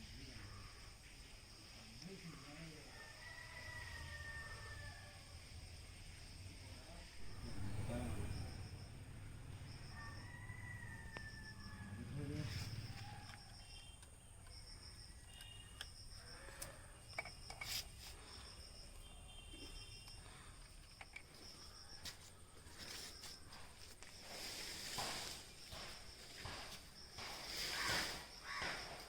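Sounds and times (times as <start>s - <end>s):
insects chirping: 0.0s - 29.0s
faint high hum: 7.2s - 9.9s.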